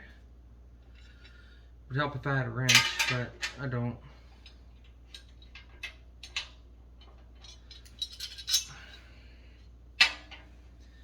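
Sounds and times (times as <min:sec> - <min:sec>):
metal clinks and clanks: 0:04.4 - 0:08.9.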